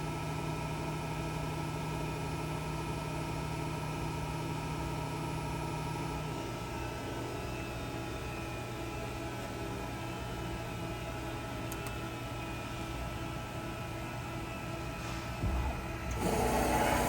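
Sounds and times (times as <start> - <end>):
grinder machine humming and whining: 5.4 - 17.0
strong low hum: 15.0 - 17.0.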